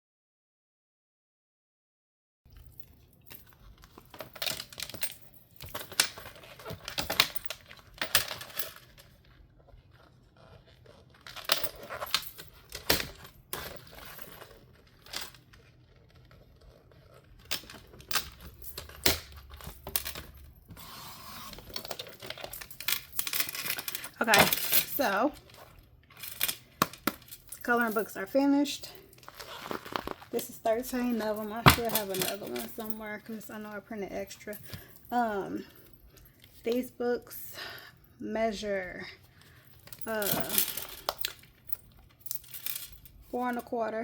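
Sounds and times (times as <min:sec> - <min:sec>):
paper rustling and scraping: 0:29.2 - 0:30.3.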